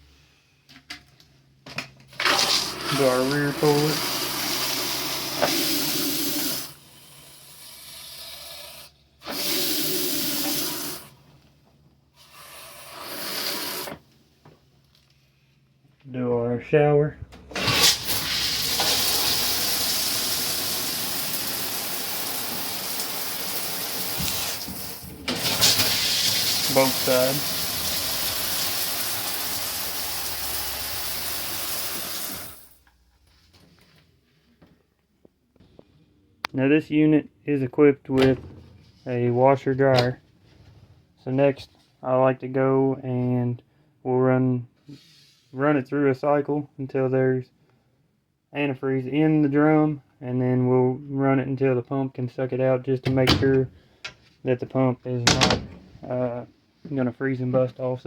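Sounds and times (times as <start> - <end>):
water spraying into toilet bowl: 2.1 - 11.1, 12.2 - 14.0, 17.5 - 32.8.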